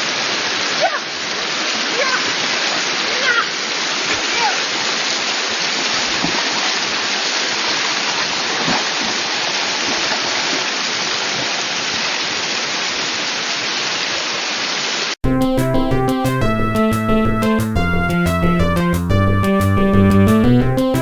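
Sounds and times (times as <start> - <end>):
river water rushing: 0.0 - 15.2
music: 15.2 - 21.0.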